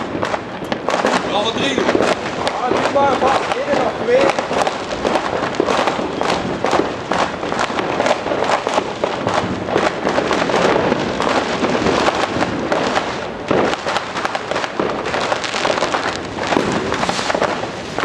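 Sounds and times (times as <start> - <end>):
fireworks and firecrackers crackling: 0.0 - 18.0.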